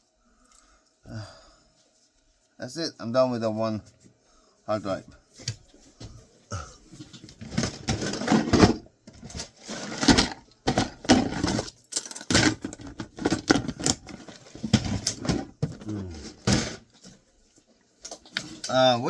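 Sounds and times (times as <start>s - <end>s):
small hard parts clattering: 7.0s - 17.2s.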